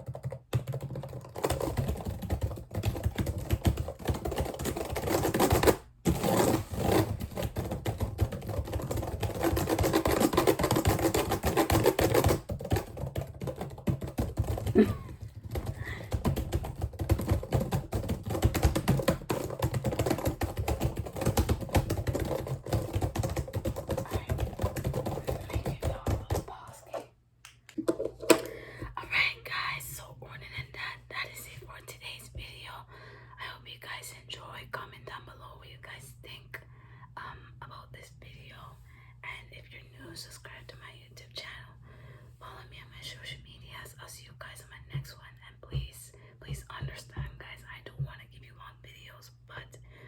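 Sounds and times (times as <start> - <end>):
rapid clicking and tapping: 0.0 - 27.0.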